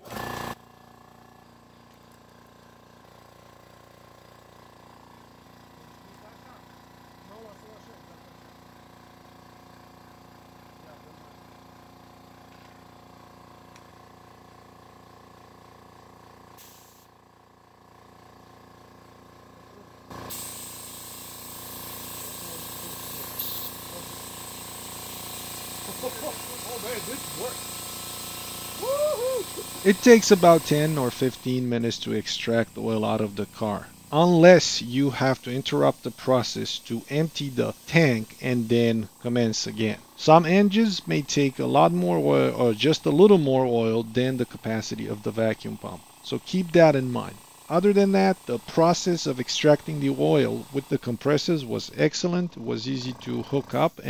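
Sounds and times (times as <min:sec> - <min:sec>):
compressed air hissing: 0:16.5 - 0:17.1, 0:20.1 - 0:54.0
machine humming: 0:20.1 - 0:54.0.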